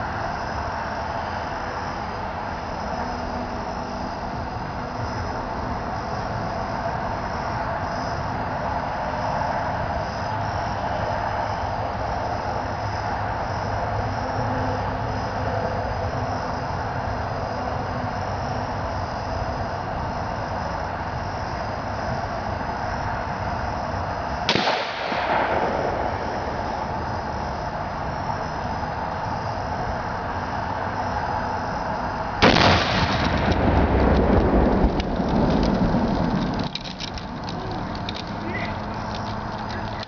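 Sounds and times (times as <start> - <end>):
steady background hiss: 0.0 - 40.0
rumbling and crackling: 24.4 - 30.2, 32.3 - 40.0
sharp gunshot: 24.5 - 27.1, 32.4 - 34.6
exploding target blast: 24.5 - 27.7, 32.4 - 36.9.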